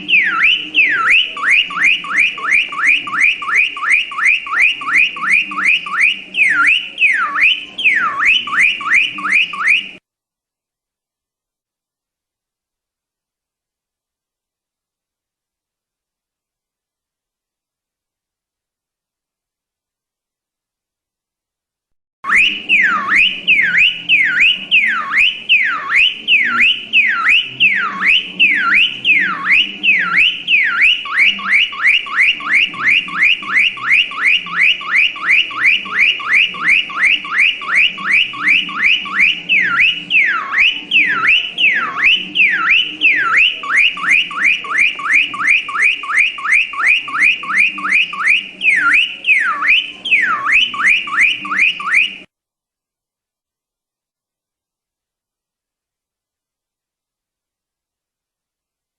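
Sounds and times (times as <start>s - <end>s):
car alarm siren whooping: 0.0s - 10.0s, 22.2s - 52.3s.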